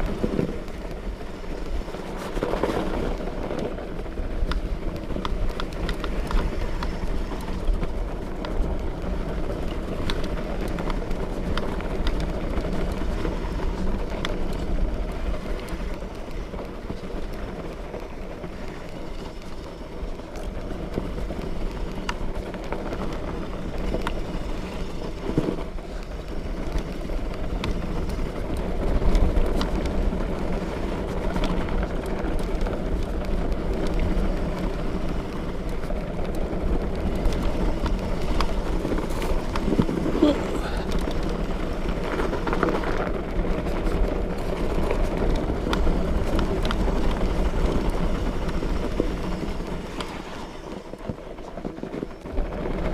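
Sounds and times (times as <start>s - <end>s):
bike clicks and rattles: 0.0s - 52.9s
wide bike tyres rumbling: 0.0s - 52.9s.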